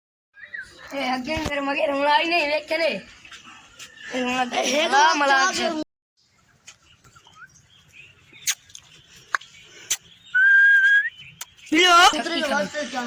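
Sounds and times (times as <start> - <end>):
person whistling: 10.4 - 11.2.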